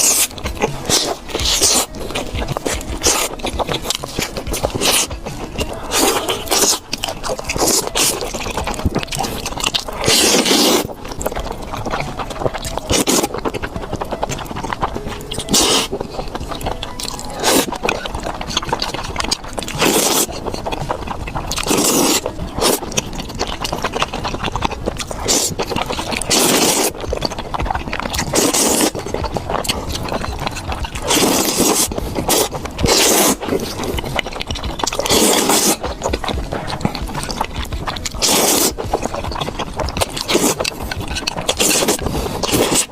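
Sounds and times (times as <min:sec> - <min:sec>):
chewing and biting food: 0:00.0 - 0:42.9.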